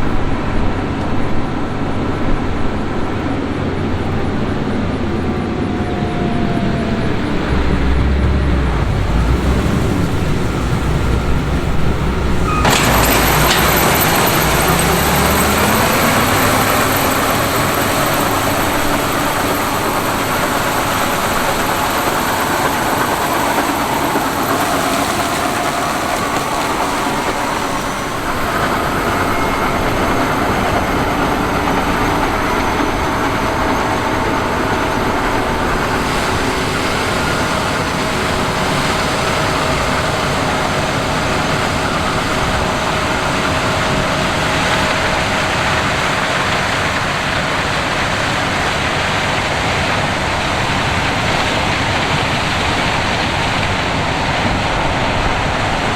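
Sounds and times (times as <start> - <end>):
combine harvester droning: 0.0 - 55.9
low hum rising in pitch: 3.6 - 44.3.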